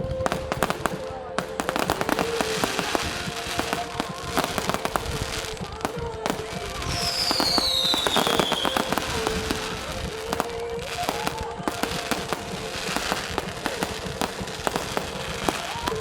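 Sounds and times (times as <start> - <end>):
falling firework whistle: 0.0 - 16.0
fireworks cracking and banging: 0.0 - 16.0.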